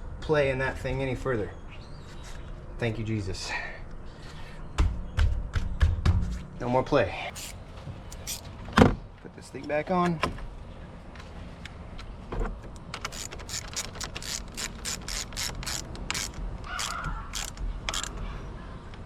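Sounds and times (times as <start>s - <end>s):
ratchet wrench clicking: 7.3s - 8.4s, 13.0s - 18.2s.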